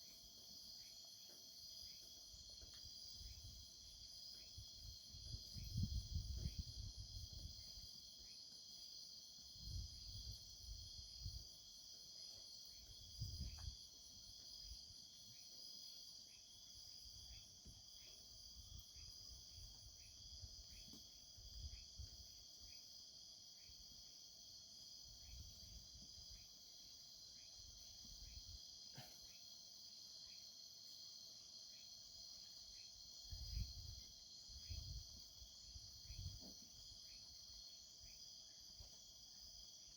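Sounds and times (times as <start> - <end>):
crickets trilling: 0.0 - 39.9.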